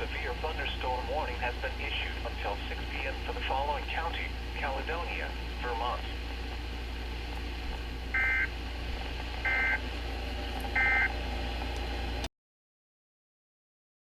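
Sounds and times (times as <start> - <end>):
steady low hum: 0.0 - 12.3
buzzy two-tone data bursts: 8.1 - 8.5.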